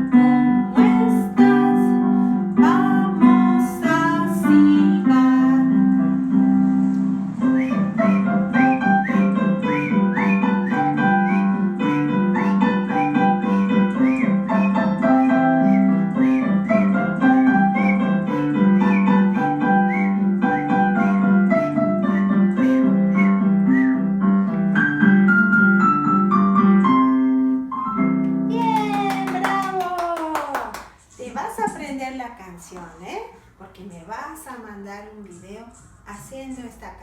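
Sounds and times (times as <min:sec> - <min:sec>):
piano-like keyboard music: 0:00.0 - 0:29.9.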